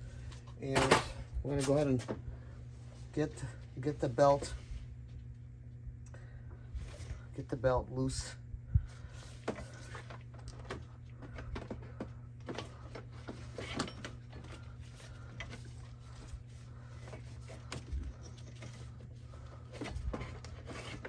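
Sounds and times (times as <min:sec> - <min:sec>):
steady low hum: 0:00.0 - 0:21.0.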